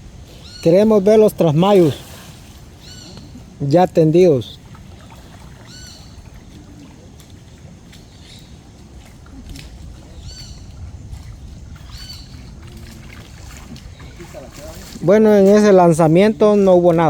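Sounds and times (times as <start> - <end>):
bird chirping: 0.3 - 1.8, 2.8 - 6.6, 8.1 - 8.6, 10.1 - 10.8, 11.8 - 12.6.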